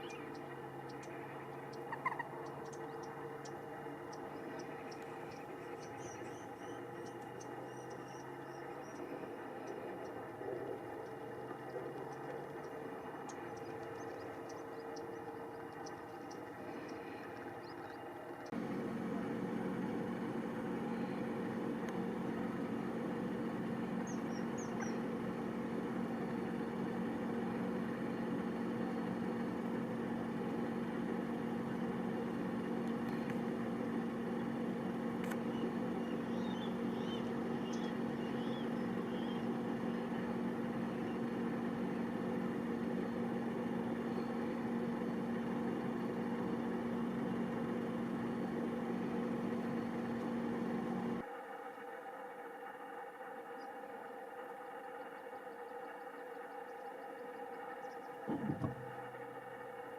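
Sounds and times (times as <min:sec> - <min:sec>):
faint bird chirps: 0:00.0 - 0:18.6, 0:23.8 - 0:30.0, 0:34.1 - 0:50.2, 0:54.8 - 0:58.3
low mechanical hum: 0:00.0 - 0:59.9.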